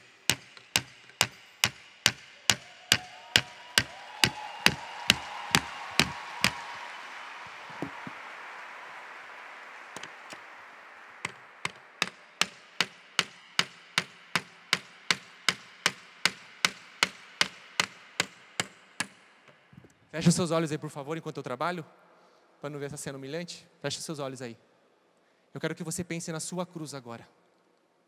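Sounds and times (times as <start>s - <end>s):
hammer blows on nails: 0.0s - 6.9s, 11.2s - 19.7s.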